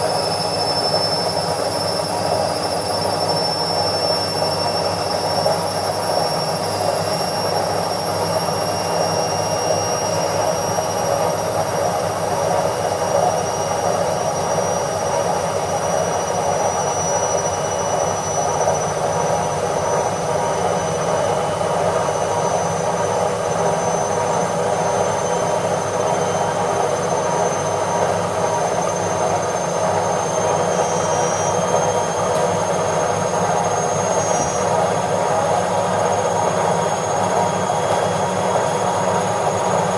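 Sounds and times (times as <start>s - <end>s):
washing machine drum spinning: 29.8s - 39.9s.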